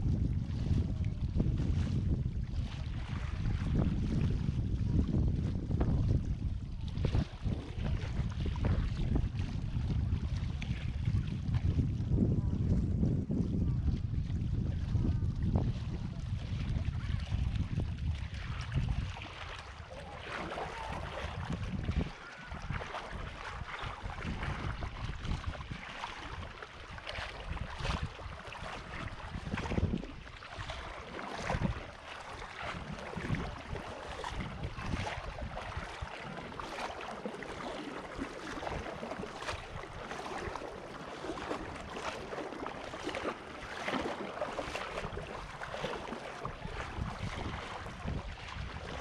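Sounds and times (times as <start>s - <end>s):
rush of wind: 0.0s - 26.5s, 27.4s - 31.9s
waves: 0.0s - 49.0s
wind buffeting microphone: 0.0s - 49.0s.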